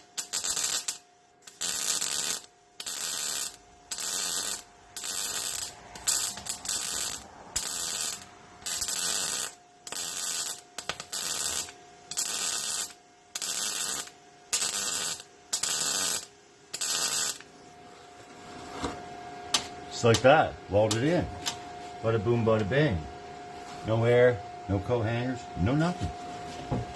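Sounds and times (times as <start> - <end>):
welder crackling arc bursts: 0.0 - 17.5.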